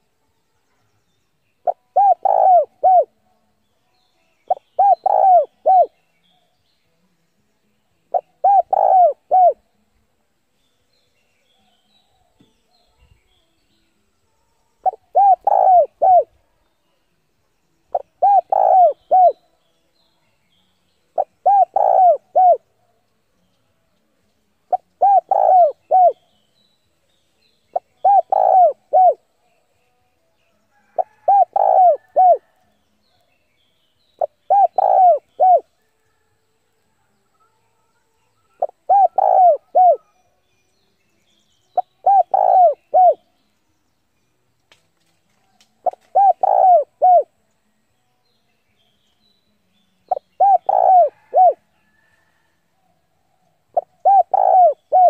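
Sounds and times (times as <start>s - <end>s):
dove cooing: 1.6s - 3.1s, 4.5s - 6.0s, 8.1s - 9.6s, 14.8s - 16.3s, 17.9s - 19.4s, 21.2s - 22.6s, 24.7s - 26.2s, 27.8s - 29.2s, 30.8s - 32.5s, 34.2s - 35.7s, 38.6s - 40.1s, 41.8s - 43.2s, 45.8s - 47.3s, 50.1s - 51.6s, 53.7s - 55.0s.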